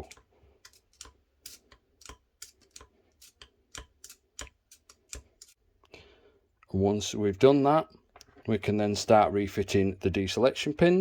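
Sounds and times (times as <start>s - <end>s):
light metal clicks and taps: 0.0s - 5.6s.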